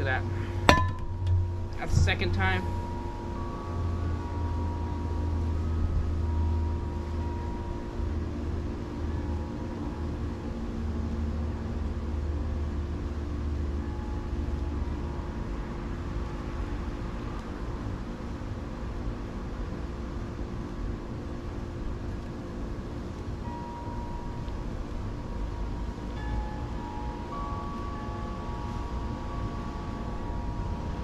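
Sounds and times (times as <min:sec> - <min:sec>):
steady tones: 0:00.0 - 0:11.3, 0:23.4 - 0:31.0
low machine hum: 0:00.0 - 0:31.0.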